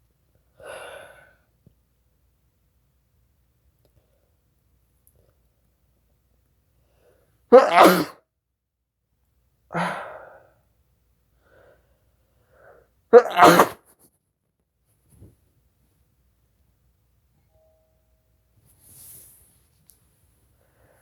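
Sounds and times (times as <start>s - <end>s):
person sneezing: 7.5s - 8.2s, 13.2s - 13.9s.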